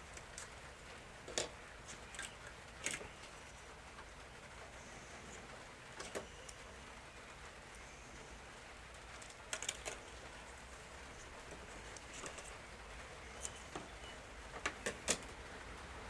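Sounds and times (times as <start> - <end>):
plastic toy parts clicking: 9.2 - 10.1.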